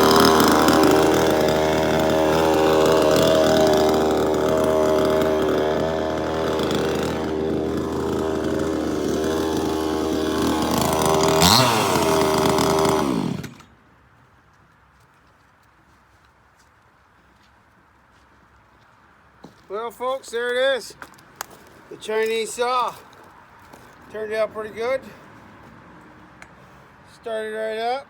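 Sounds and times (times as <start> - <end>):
two-stroke chainsaw running: 0.0 - 13.8.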